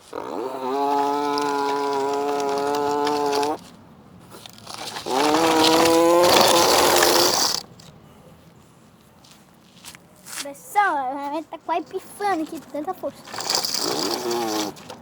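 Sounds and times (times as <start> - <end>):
person imitating tractor engine: 0.0 - 3.7, 4.6 - 7.6, 11.0 - 15.0.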